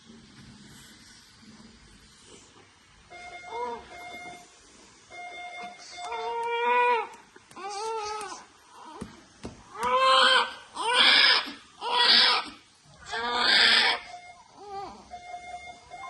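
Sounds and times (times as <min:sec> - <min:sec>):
newborn baby crying: 0:06.1 - 0:09.0, 0:09.7 - 0:15.0.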